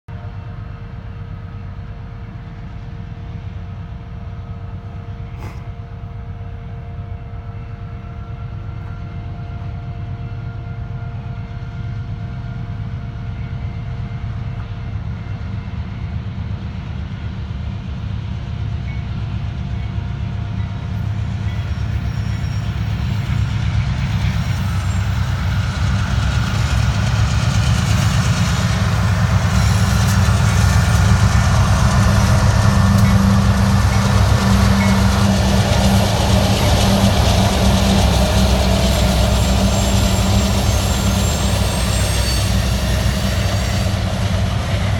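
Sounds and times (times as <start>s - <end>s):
diesel locomotive engine rumble: 0.1s - 44.9s
steady whining tones: 24.8s - 44.9s.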